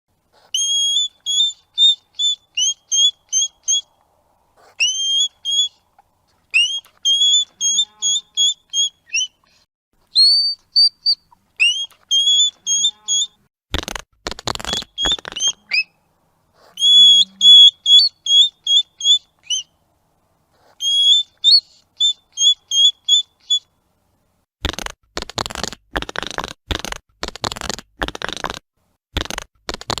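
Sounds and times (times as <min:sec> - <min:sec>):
hedgehog snuffling and huffing: 0:00.1 - 0:15.9, 0:16.5 - 0:18.4, 0:20.4 - 0:22.5, 0:24.6 - 0:28.6
hedgehog chirping: 0:00.4 - 0:04.0, 0:04.6 - 0:13.5, 0:14.5 - 0:16.0, 0:16.6 - 0:19.8, 0:20.6 - 0:23.7.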